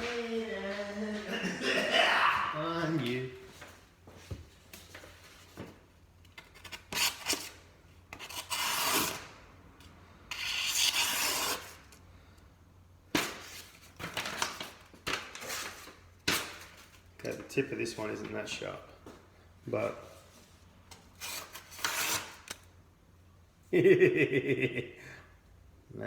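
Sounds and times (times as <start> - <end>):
knife blade rasping: 8.2 - 9.2, 10.3 - 11.8.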